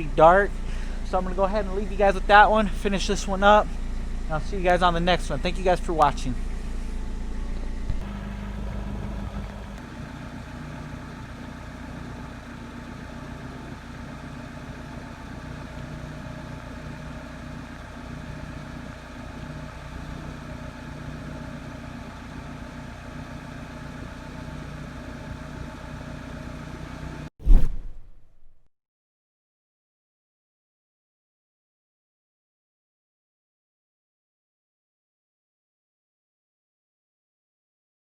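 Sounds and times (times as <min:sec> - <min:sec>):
car engine idling: 0:00.0 - 0:27.2.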